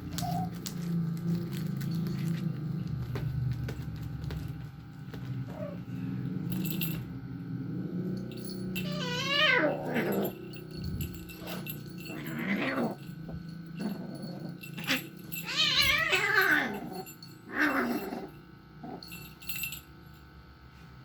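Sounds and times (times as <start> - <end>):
cats growling: 0.0 - 2.4, 5.4 - 19.3
cats yowling: 8.8 - 10.4, 11.4 - 13.0, 14.2 - 19.0.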